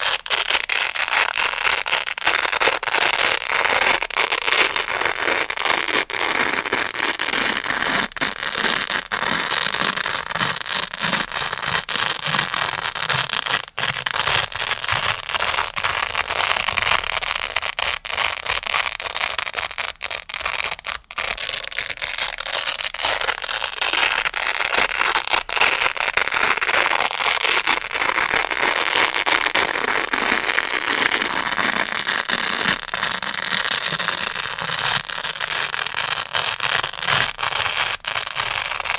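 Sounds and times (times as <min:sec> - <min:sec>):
velcro scratching and crackling: 0:00.0 - 0:38.9.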